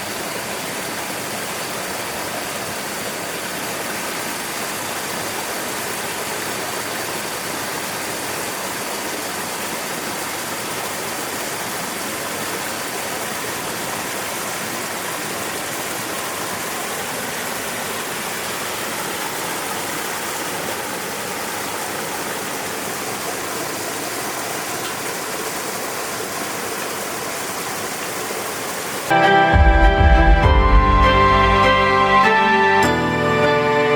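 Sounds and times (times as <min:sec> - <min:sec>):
river water rushing: 0:00.0 - 0:30.0
music: 0:29.1 - 0:33.9.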